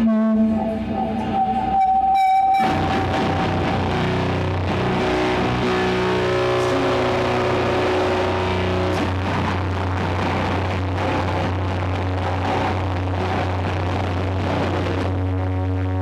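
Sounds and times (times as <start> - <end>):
high steady tone: 0.0 - 9.0
heavy metal guitar chords: 0.0 - 16.0.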